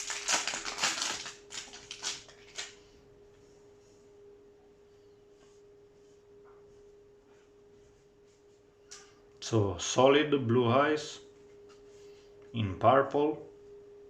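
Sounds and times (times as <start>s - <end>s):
foil pack crinkling and tearing: 0.0s - 2.9s
faint steady hum: 0.0s - 14.0s.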